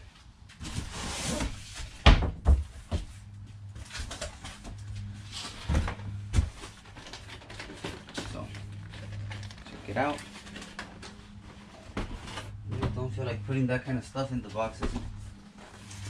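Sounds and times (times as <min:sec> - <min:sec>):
thuds and knocks of items: 0:01.8 - 0:03.2, 0:05.6 - 0:06.8, 0:11.9 - 0:13.2, 0:14.7 - 0:15.4
steady low hum: 0:02.6 - 0:16.0
packaging rustle: 0:06.6 - 0:12.6.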